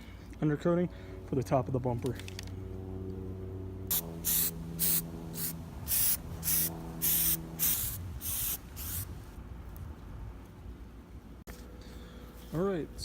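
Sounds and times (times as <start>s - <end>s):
aerosol can spraying: 3.9s - 9.2s.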